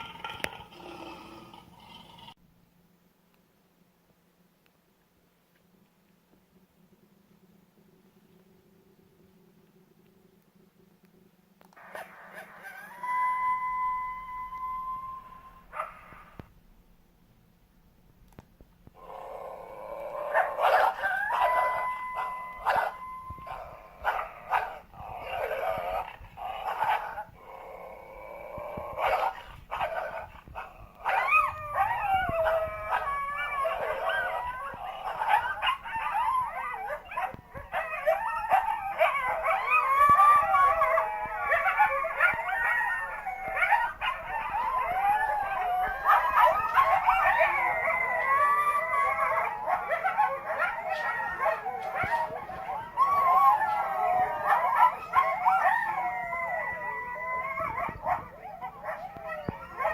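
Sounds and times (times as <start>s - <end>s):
coyotes howling and yipping: 11.8s - 16.4s, 19.0s - 59.9s.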